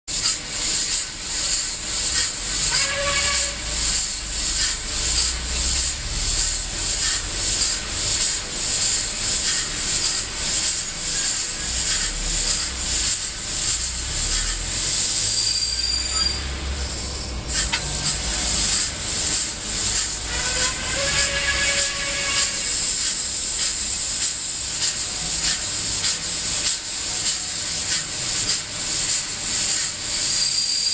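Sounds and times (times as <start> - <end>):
model steam locomotive chuffing: 0.1 - 30.9.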